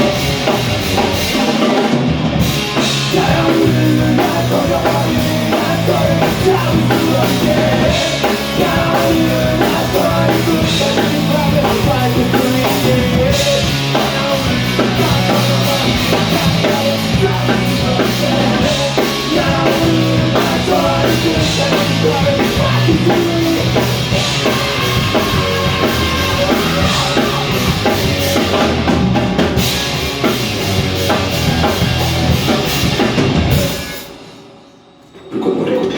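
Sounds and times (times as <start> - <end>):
rock band playing live: 0.0 - 34.6
person singing: 2.8 - 28.9.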